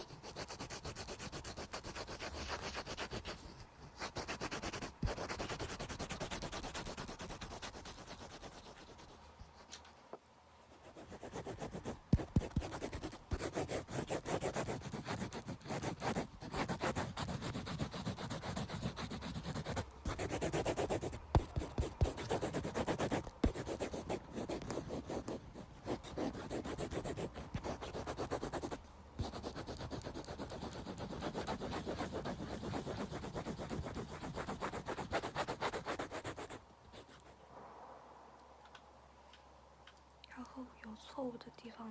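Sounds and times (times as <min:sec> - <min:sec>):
pencil sketching on paper: 0:00.0 - 0:09.2, 0:10.8 - 0:37.4
pencil tapping: 0:11.0 - 0:36.5.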